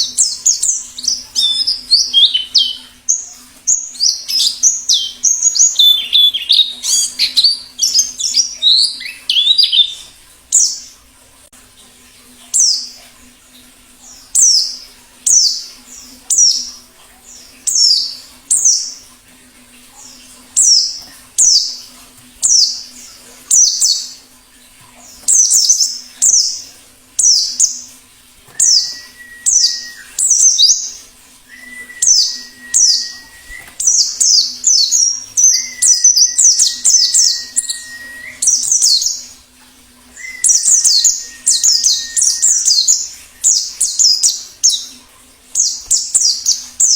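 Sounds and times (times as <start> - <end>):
bird chirping: 0.0 - 10.9, 25.0 - 27.9, 28.5 - 39.4, 40.2 - 45.0, 45.6 - 46.9.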